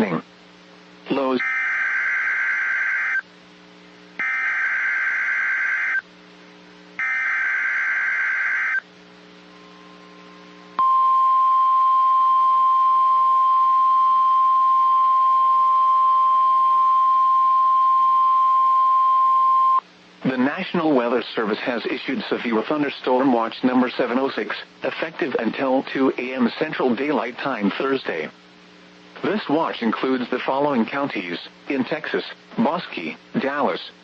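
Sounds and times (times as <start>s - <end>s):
steady warning alarm tone: 1.4s - 3.2s, 4.2s - 6.0s, 7.0s - 8.8s.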